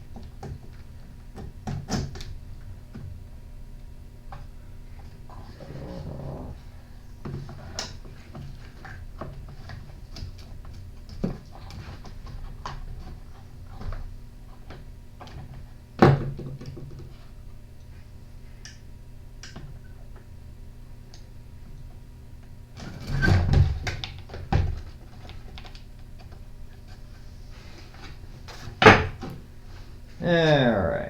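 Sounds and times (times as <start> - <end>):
steady low hum: 0.0 - 22.9.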